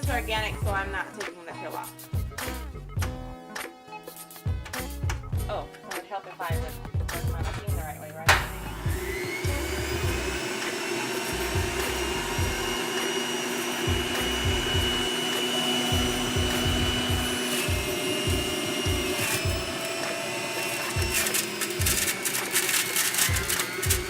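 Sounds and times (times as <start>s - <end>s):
electric juicer motor: 8.3s - 24.0s.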